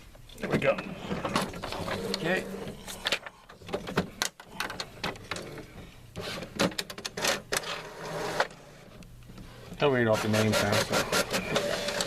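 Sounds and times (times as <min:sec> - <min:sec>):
printer clicking and whirring: 0:10.1 - 0:12.0.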